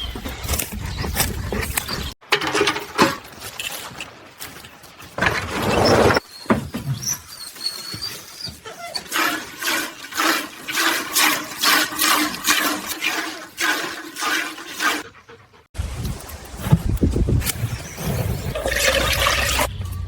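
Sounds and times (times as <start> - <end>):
liquid splashing in spurts: 9.0 - 15.0, 18.4 - 19.7.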